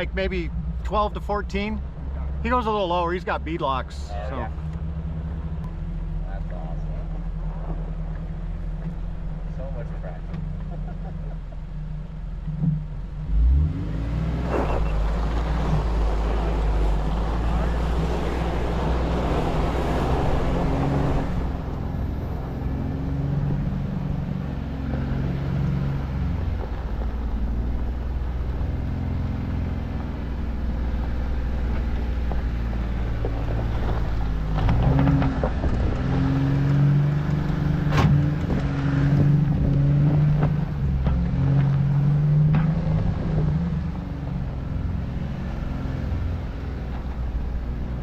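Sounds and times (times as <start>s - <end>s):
engine running at low revs: 0.0s - 48.0s.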